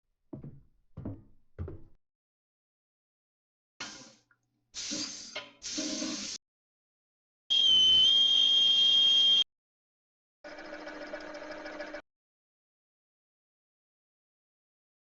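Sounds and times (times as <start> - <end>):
high whistle tone over hiss: 7.5 - 9.4.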